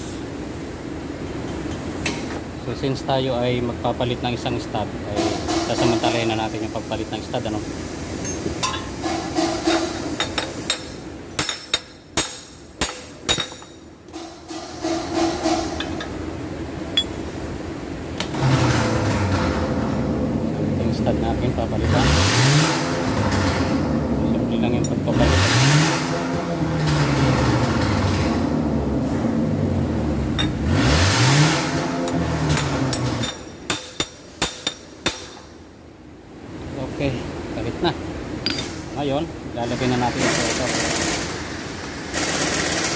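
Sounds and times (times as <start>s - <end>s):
hammer striking metal wheel hub: 8.2s - 16.1s, 30.4s - 30.6s, 32.0s - 35.5s, 38.4s - 38.8s
vehicle engine revving: 18.3s - 33.2s.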